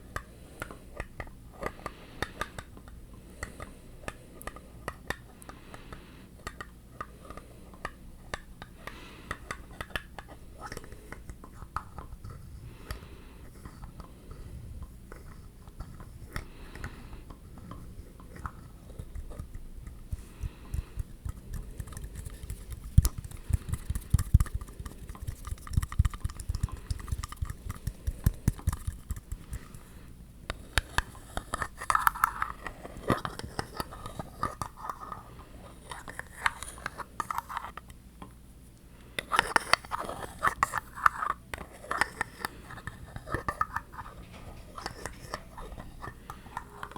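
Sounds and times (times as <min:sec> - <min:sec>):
scratching on objects: 0:07.0 - 0:38.0, 0:39.1 - 0:46.9
light tapping on objects: 0:17.7 - 0:29.9.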